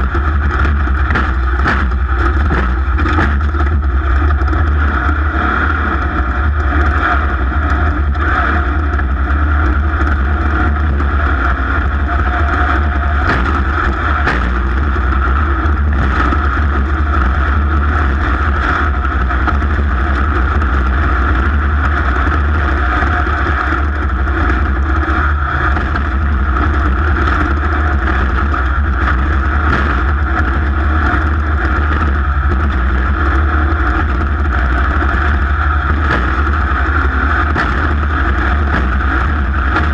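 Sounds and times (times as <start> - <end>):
racing engine running hard: 0.0 - 39.9.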